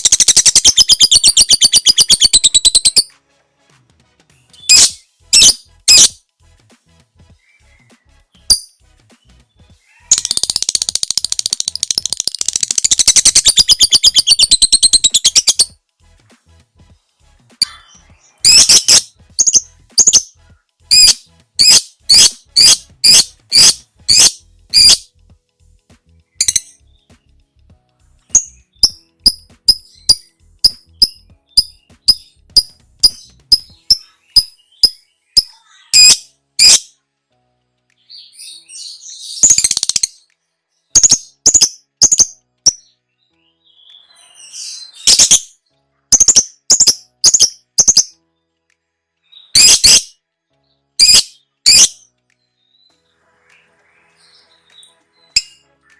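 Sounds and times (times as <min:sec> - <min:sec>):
harsh scratchy bird chatter: 0:00.0 - 0:03.0, 0:09.9 - 0:15.7, 0:20.9 - 0:25.0
lovebird chirping: 0:00.0 - 0:03.1, 0:04.6 - 0:06.2, 0:09.9 - 0:15.8, 0:17.6 - 0:20.3, 0:20.9 - 0:25.1, 0:28.3 - 0:36.9, 0:40.9 - 0:42.8, 0:43.7 - 0:45.5, 0:46.1 - 0:48.2, 0:49.3 - 0:50.2, 0:50.9 - 0:52.0.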